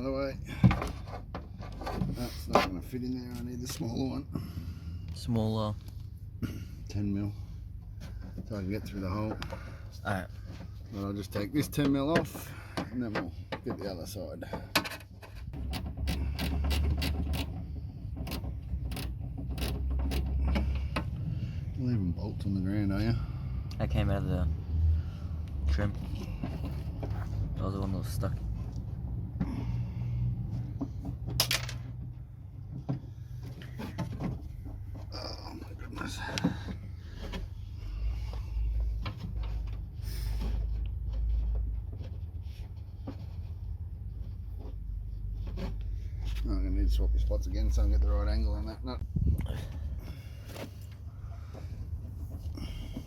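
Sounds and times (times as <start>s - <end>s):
tools clicking and knocking: 14.6s - 21.2s.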